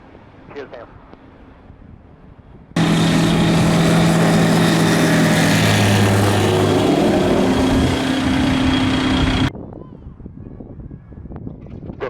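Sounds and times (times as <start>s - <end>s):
aircraft propeller engine running: 2.8s - 9.5s.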